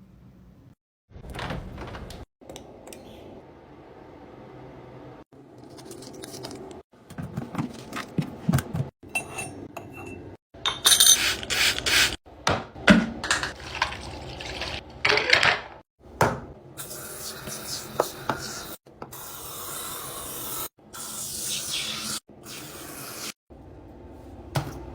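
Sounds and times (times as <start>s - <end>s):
glass jars clinking: 9.0s - 11.6s.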